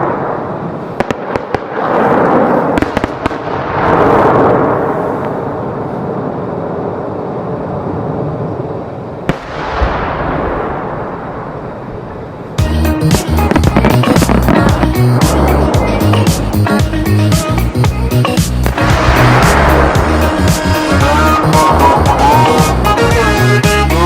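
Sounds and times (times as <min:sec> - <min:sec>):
fireworks crackling pops: 0:00.0 - 0:06.2, 0:09.3 - 0:11.2, 0:12.5 - 0:23.9
fireworks booming: 0:00.0 - 0:07.1, 0:07.8 - 0:23.8
sharp bang: 0:18.4 - 0:22.7.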